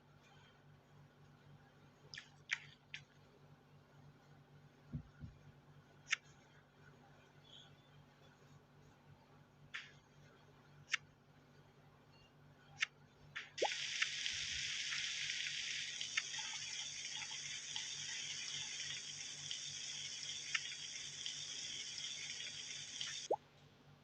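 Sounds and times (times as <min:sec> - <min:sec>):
water running from tap: 0:13.6 - 0:23.3.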